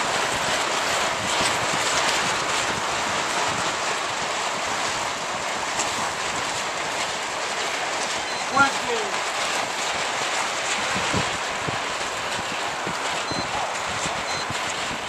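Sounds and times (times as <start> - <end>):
water rushing: 0.0 - 15.0
wind: 0.0 - 15.0.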